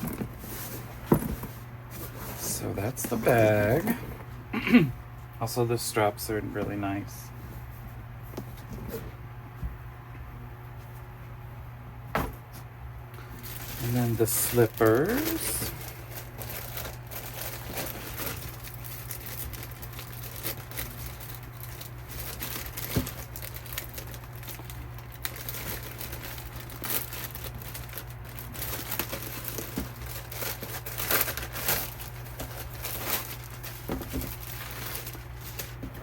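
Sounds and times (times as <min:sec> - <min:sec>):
packaging crinkling: 0:13.2 - 0:36.0
packaging tearing: 0:13.4 - 0:35.7.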